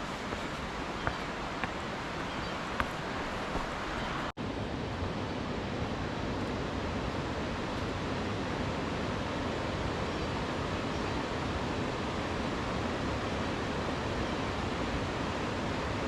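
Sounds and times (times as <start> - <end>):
flowing water rushing: 0.0 - 4.3.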